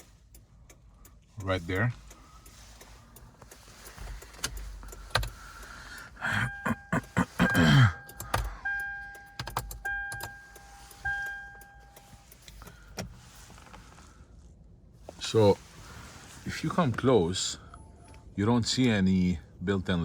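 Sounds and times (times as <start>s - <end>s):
electronic warning chime: 7.5s - 12.0s.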